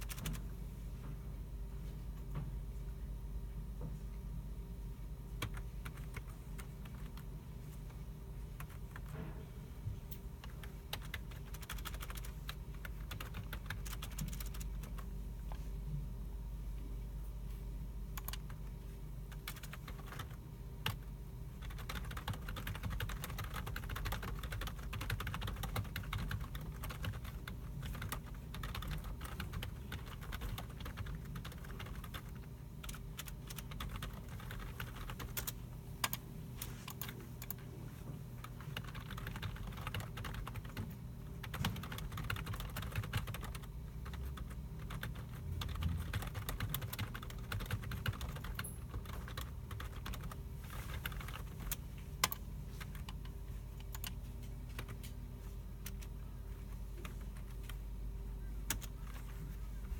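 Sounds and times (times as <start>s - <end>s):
keyboard typing: 0.0s - 0.4s, 5.4s - 7.3s, 8.5s - 9.2s, 10.4s - 15.1s, 18.2s - 18.7s, 19.3s - 37.7s, 38.4s - 55.1s, 58.6s - 59.5s
low hum of computers: 0.0s - 59.9s.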